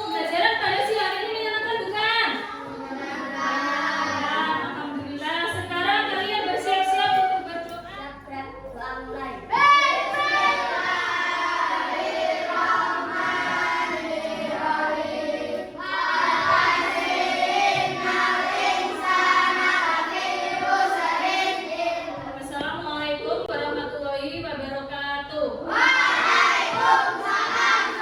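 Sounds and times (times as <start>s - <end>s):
children singing together: 2.4s - 5.1s, 9.4s - 22.5s, 25.7s - 28.0s.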